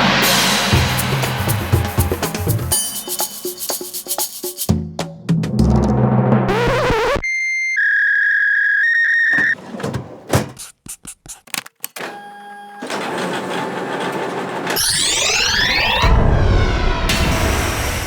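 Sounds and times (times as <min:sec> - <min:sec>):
electronic beep tones: 0:06.5 - 0:09.6.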